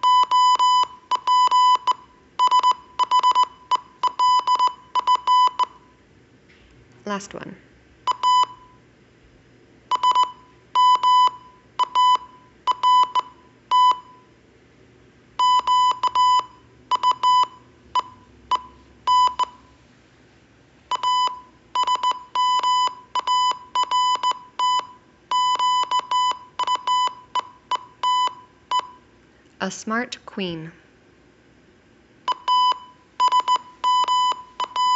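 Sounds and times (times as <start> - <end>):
morse code beeping: 0.0 - 5.8, 8.1 - 8.8, 9.9 - 14.3, 15.4 - 19.7, 20.9 - 29.0, 32.3 - 34.9.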